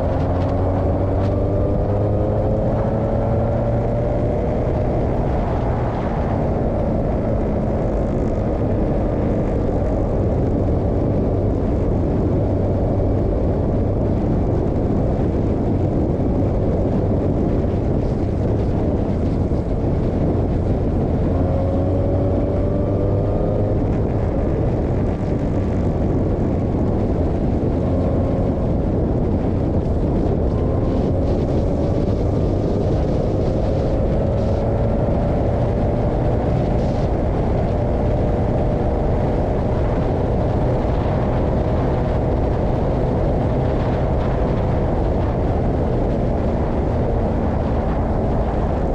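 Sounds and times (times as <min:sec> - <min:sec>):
wind and road noise: 0:00.0 - 0:48.9
race car engine revving: 0:21.0 - 0:39.5.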